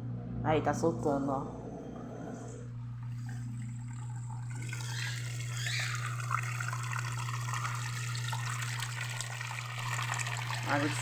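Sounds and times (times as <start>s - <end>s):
washing machine low hum: 0.0s - 11.0s
water gushing and splashing: 3.0s - 11.0s.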